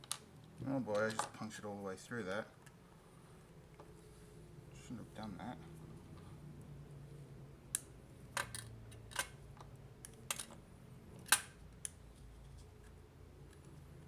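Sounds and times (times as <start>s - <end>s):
tool clicks and snaps on plastic: 11.2s - 12.0s.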